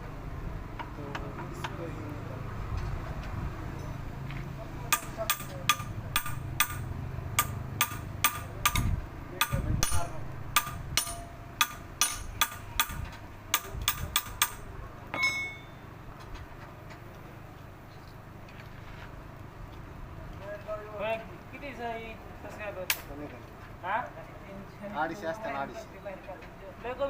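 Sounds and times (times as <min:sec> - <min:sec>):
hammer blows on metal: 0:04.9 - 0:15.8
ringing metallic clank: 0:05.0 - 0:13.0, 0:14.0 - 0:15.9.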